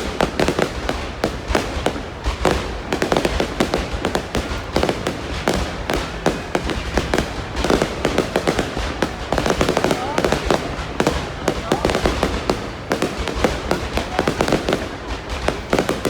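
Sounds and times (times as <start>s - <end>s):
fireworks crackling bangs: 0.0s - 16.0s.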